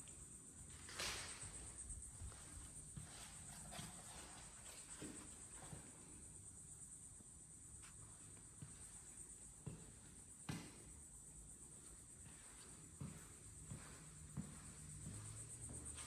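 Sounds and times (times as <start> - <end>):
soft footsteps: 0.8 - 6.1, 7.8 - 11.0, 11.7 - 16.0.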